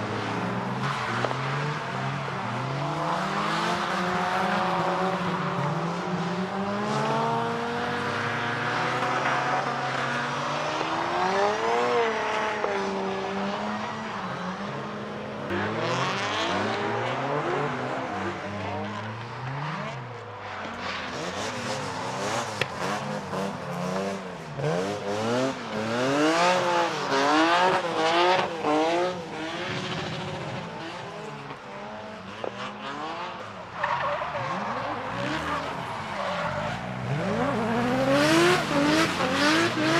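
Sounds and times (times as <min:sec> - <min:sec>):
car engines revving: 0:00.0 - 0:39.9
tyre squeal and skidding: 0:19.2 - 0:27.9, 0:32.8 - 0:39.9.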